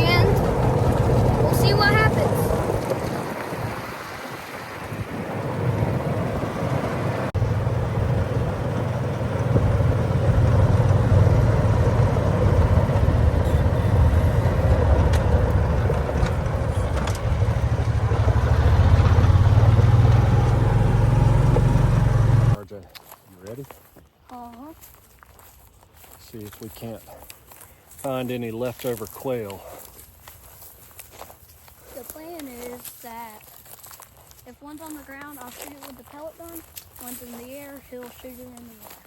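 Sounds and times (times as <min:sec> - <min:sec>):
road and wind noise: 0:00.0 - 0:22.6, 0:24.0 - 0:39.0
vehicle engine rumble: 0:00.0 - 0:22.6.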